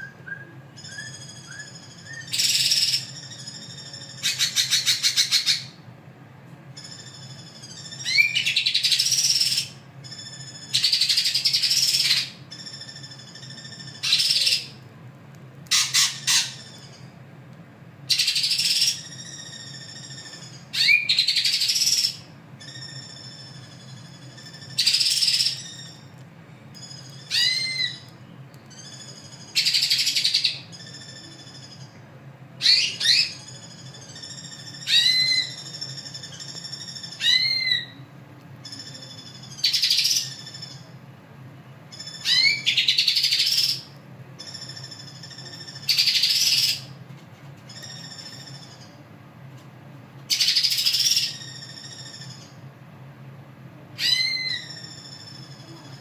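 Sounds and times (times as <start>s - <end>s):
bird singing whistles and rasps: 0.0s - 5.8s, 6.8s - 14.8s, 18.1s - 26.1s, 26.8s - 32.0s, 32.6s - 38.0s, 38.6s - 40.9s, 41.9s - 47.0s, 50.3s - 52.6s, 54.0s - 56.0s.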